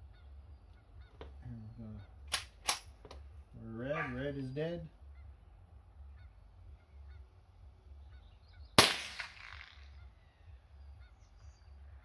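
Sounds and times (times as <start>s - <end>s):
rifle shot with echo: 8.8s - 10.0s.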